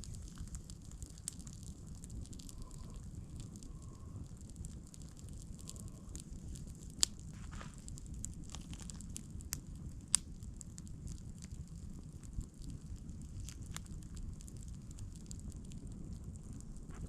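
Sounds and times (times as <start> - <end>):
campfire crackling: 0.0 - 17.0
sharp fire pops: 0.0 - 17.0.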